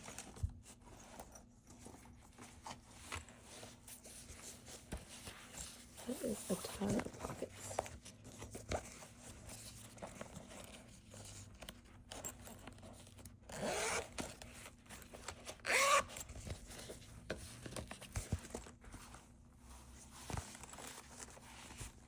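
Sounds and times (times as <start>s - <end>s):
fabric pouch zipper pulled: 13.5s - 14.2s, 15.6s - 16.2s.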